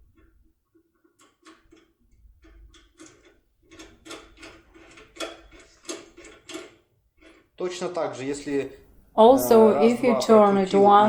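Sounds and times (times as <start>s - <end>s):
lock tool metallic clicks and scrapes: 1.1s - 7.5s.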